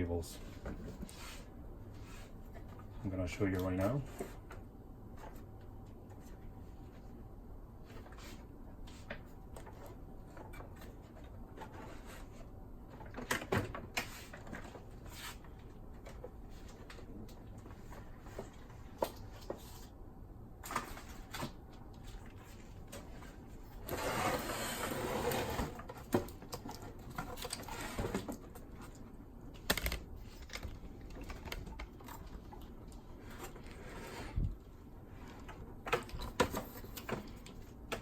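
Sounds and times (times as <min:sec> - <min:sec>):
plastic parts clicking and knocking: 0:29.6 - 0:32.7.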